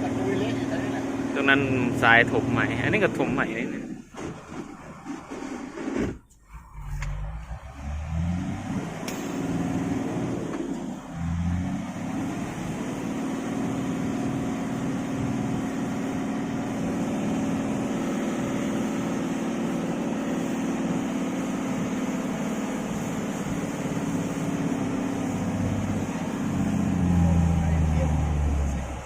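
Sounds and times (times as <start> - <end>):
truck diesel engine under load: 0.0 - 29.0.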